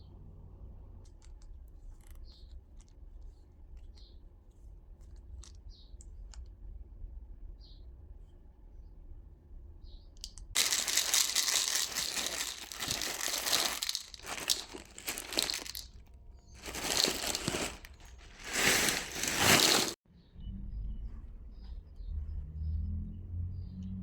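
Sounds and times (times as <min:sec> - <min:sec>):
packaging crinkling: 0:10.6 - 0:16.0, 0:16.6 - 0:20.0.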